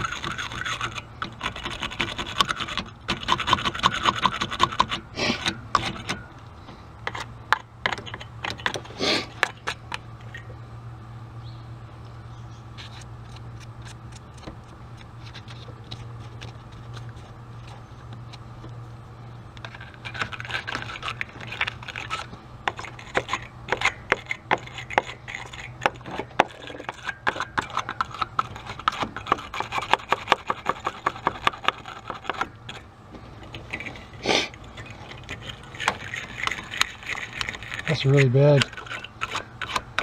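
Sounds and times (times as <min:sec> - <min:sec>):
wire brush scrubbing battery terminal: 0:00.0 - 0:10.5, 0:19.5 - 0:40.0.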